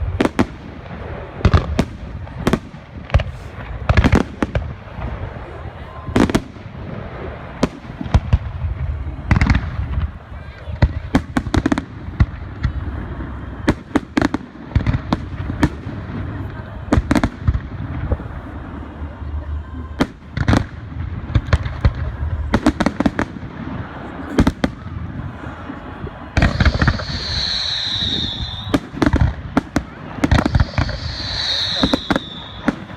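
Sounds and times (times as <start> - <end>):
fireworks bangs: 0.0 - 32.9
high falling firework whistle: 26.4 - 32.9.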